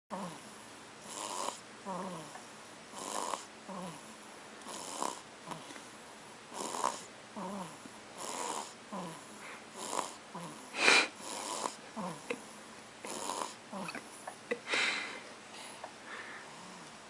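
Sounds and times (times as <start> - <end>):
baby snoring: 0.1 - 4.1, 4.7 - 5.7, 6.5 - 12.4, 13.0 - 14.0.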